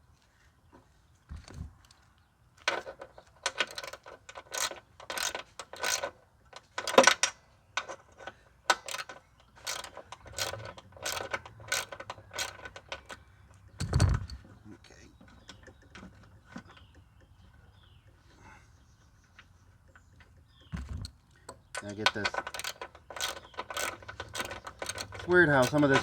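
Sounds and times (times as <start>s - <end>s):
ratchet wrench clicking: 3.5s - 6.1s, 8.7s - 13.2s, 22.0s - 26.0s.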